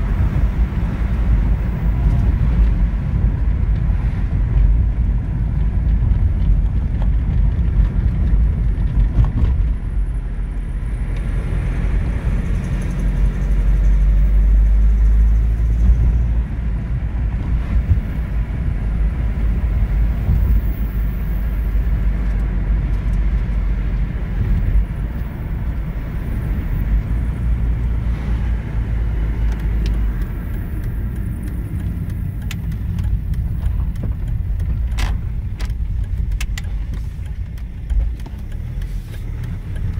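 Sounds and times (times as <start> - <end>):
diesel engine running: 0.0 - 39.9
injector ticking and knocking: 29.4 - 39.9.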